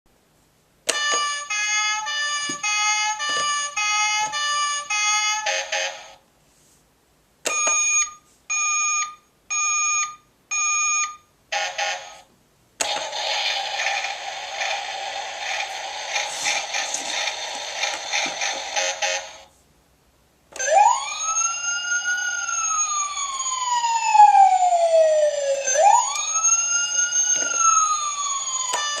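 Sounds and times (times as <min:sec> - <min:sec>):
toy wailing siren: 0:20.6 - 0:29.0.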